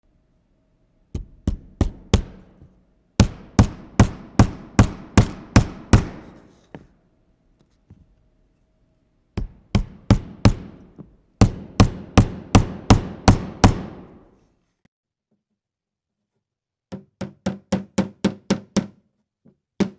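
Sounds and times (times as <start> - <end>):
hammer striking hard surface: 1.2 - 6.6, 9.4 - 14.3.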